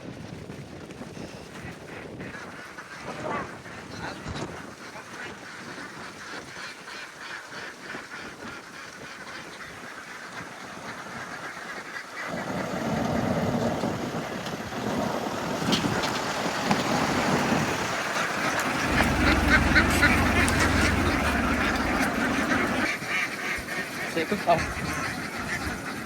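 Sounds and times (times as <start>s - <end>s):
ducks quacking: 1.4s - 12.6s, 16.7s - 26.0s.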